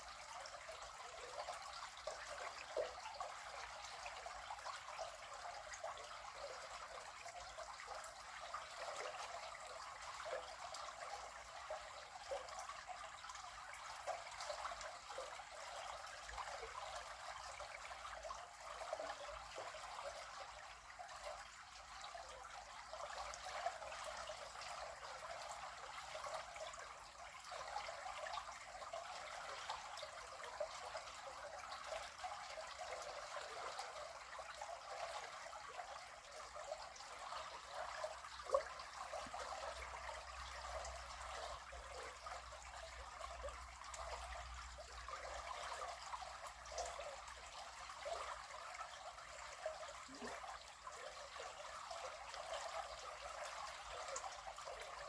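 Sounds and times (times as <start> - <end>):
river water babbling: 27.6 - 55.0.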